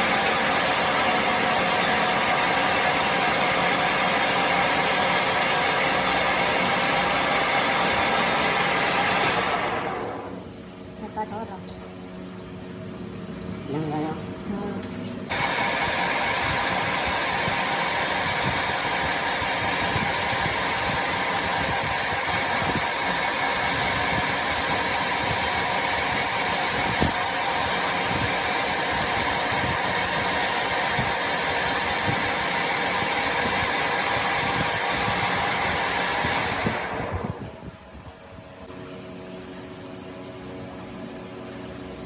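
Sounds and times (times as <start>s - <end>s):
power tool running: 0.0s - 10.6s, 15.3s - 37.7s.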